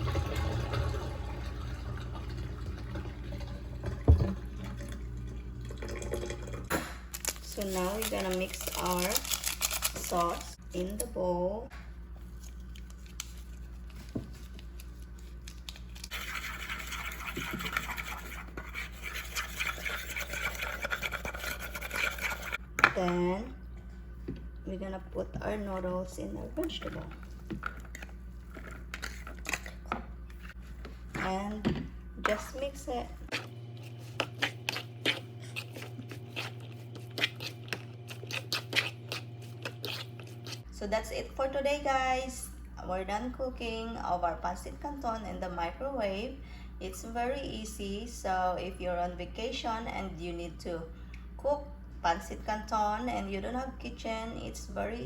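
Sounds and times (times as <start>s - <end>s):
utensil scraping in a bowl: 16.0s - 22.6s, 33.3s - 40.7s.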